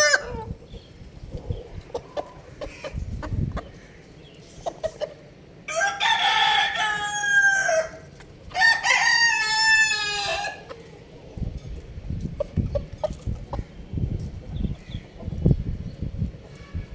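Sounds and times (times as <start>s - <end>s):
rooster crowing: 5.7s - 10.7s.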